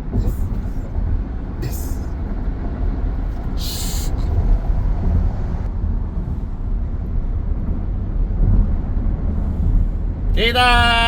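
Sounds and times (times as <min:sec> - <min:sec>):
car road noise rumble: 0:00.0 - 0:11.0
short hiss: 0:03.6 - 0:04.3.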